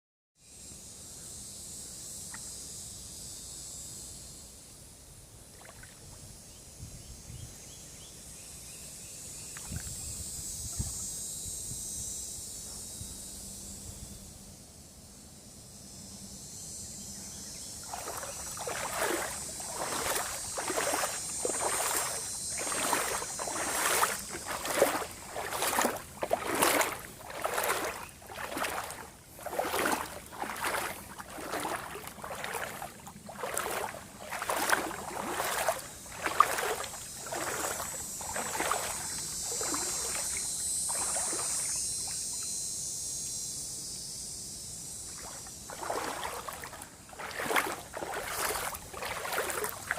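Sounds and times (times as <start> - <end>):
footsteps wading through water: 5.6 - 6.1, 9.6 - 10.0, 17.8 - 42.2, 45.1 - 49.9.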